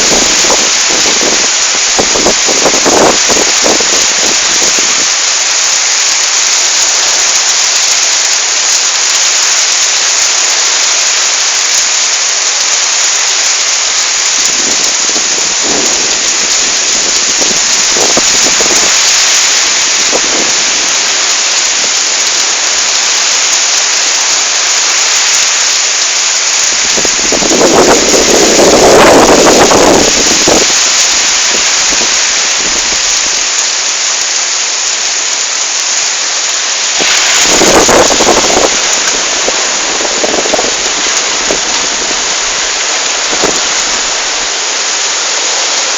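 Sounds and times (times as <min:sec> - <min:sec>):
wind buffeting microphone: 0:00.0 - 0:05.5, 0:14.2 - 0:21.6, 0:26.1 - 0:34.8, 0:36.4 - 0:44.5
heavy rain pouring: 0:00.0 - 0:45.9.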